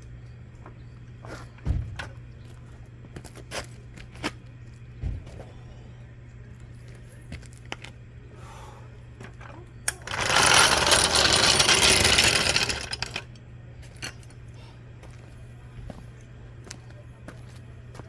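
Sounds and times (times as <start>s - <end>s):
handheld power tool running: 9.9s - 13.2s.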